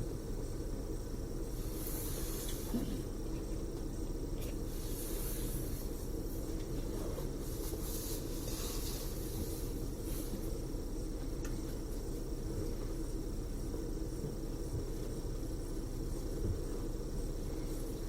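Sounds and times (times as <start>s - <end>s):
engine and road rumble: 0.0s - 18.0s
soft hissing: 1.4s - 3.4s, 4.4s - 10.8s.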